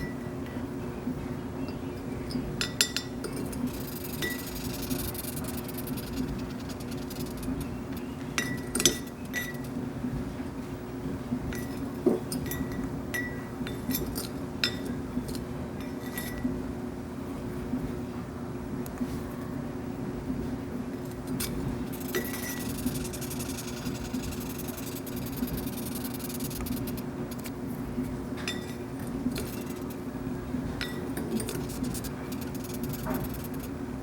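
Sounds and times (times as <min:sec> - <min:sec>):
insect sharp clicks: 0:03.7 - 0:08.1, 0:21.9 - 0:27.5, 0:29.4 - 0:30.0, 0:31.5 - 0:33.7
insect squeaky chirps: 0:03.7 - 0:08.2, 0:21.8 - 0:27.5, 0:29.4 - 0:30.1, 0:31.4 - 0:33.7.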